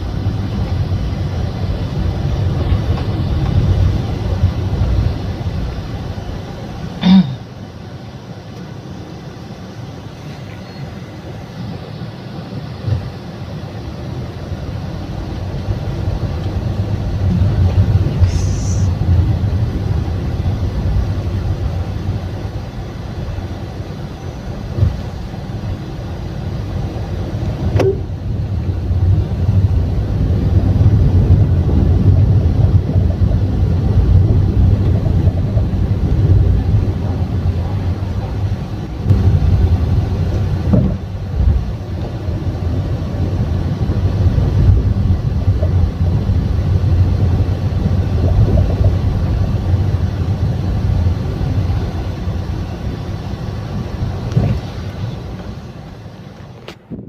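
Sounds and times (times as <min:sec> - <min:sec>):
tyre and road rumble: 0:26.8 - 0:57.0.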